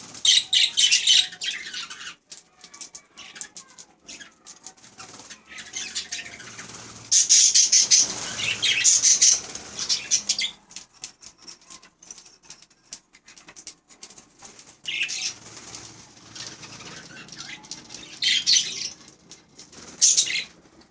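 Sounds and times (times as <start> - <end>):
budgerigars chattering and chirping: 0.2 - 2.2, 4.9 - 10.6, 14.9 - 19.2, 19.8 - 20.6.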